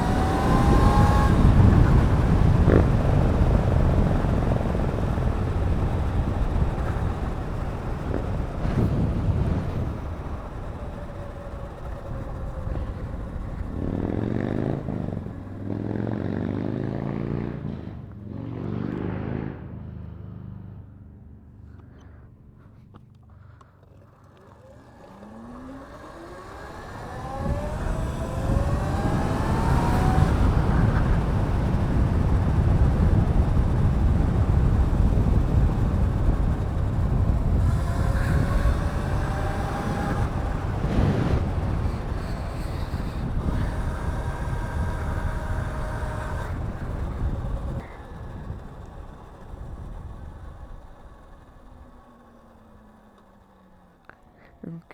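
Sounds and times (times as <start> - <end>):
electric motor whining: 0.0 - 16.6, 22.6 - 54.6
wind on microphone: 0.0 - 18.1, 26.7 - 50.7.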